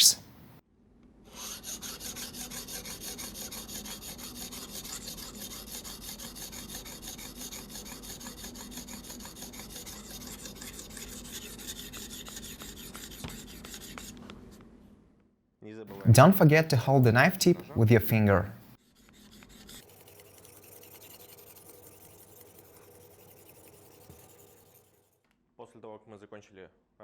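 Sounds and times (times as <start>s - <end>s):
sharpening stone rasping on knife: 1.9s - 14.0s.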